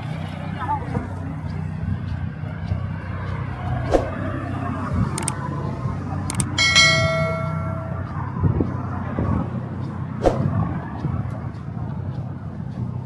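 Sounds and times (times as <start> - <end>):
traffic rumble: 0.0 - 13.0
short clicks: 5.2 - 5.4, 6.3 - 6.6
high-pitched tone: 6.3 - 8.2.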